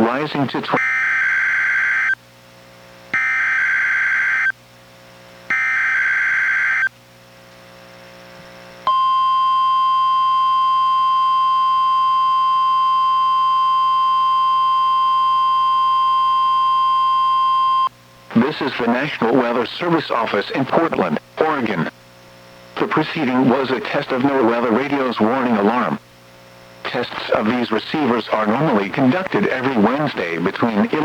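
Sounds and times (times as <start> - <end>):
faint radio hiss: 0.0 - 0.8, 17.9 - 31.0
steady alarm tone: 0.7 - 2.2, 3.1 - 4.6, 5.5 - 6.9, 8.8 - 17.9.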